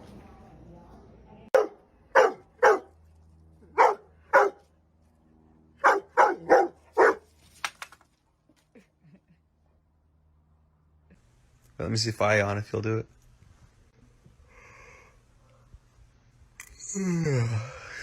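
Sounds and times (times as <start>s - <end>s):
dog barking: 1.5s - 3.0s, 3.7s - 4.7s, 5.8s - 7.3s.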